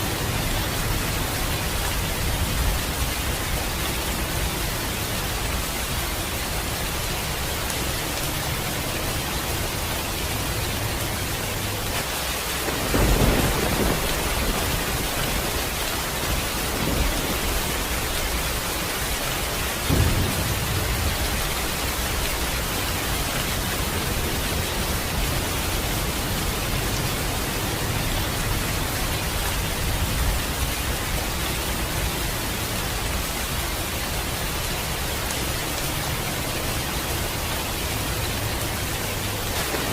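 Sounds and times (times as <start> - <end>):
heavy rain hissing: 0.0 - 39.9
thunderclap rolling into rumble: 12.6 - 18.7, 19.8 - 23.8.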